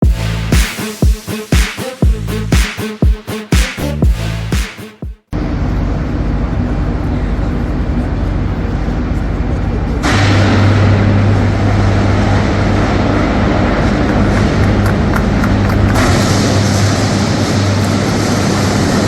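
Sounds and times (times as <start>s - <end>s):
deep electrical hum: 5.4s - 19.0s.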